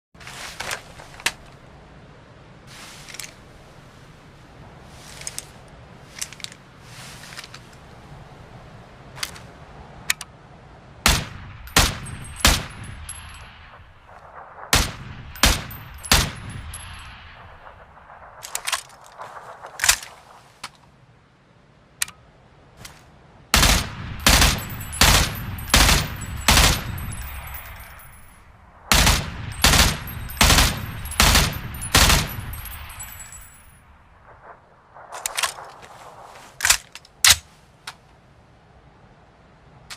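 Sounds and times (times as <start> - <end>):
rifle metallic clicks: 9.2 - 10.3, 17.7 - 20.8, 35.0 - 35.9
rifle gunshots echoing: 11.1 - 20.4, 23.6 - 33.6.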